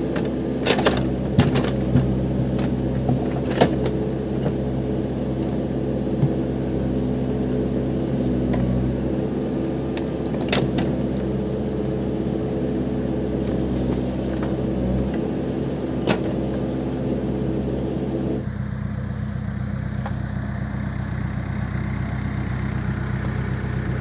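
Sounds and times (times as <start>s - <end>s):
diesel engine running: 0.0s - 24.0s.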